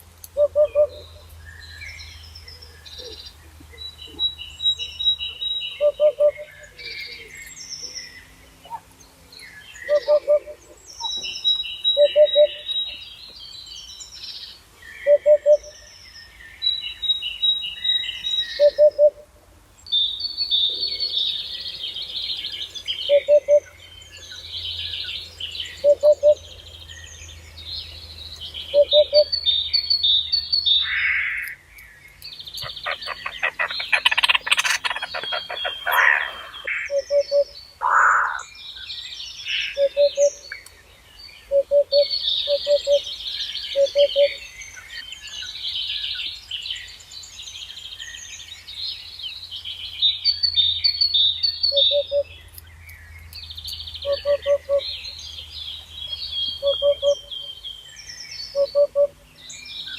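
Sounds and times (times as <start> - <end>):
birds chirping and trilling: 0.0 - 59.9
fast rattling bird trill: 32.6 - 36.6.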